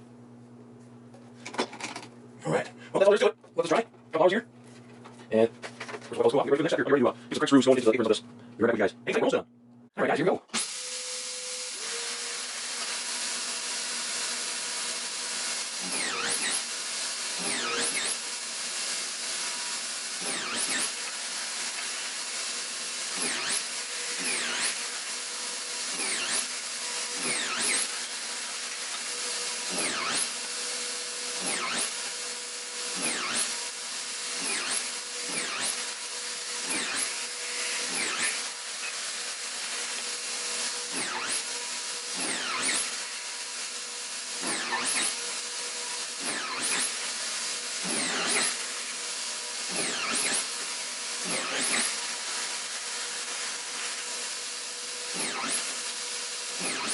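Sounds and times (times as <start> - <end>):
electric sander on wood: 10.6 - 56.9.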